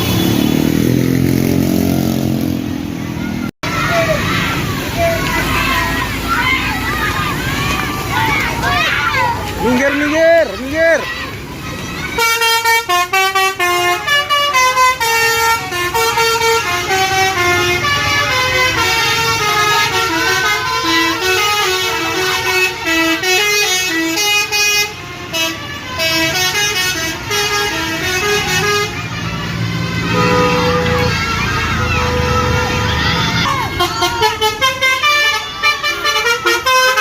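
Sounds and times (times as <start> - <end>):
bus musical horn playing tune: 12.2 - 33.0, 33.7 - 37.0.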